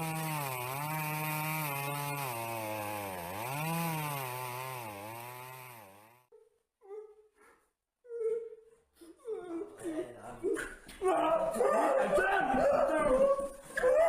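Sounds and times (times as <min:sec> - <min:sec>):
chainsaw engine revving: 0:00.0 - 0:06.3.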